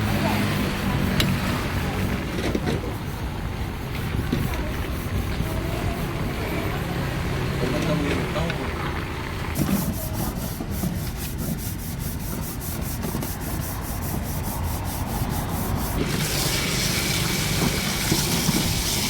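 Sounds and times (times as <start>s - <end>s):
rhythmic scraping strokes: 0.0s - 8.6s, 9.5s - 19.0s.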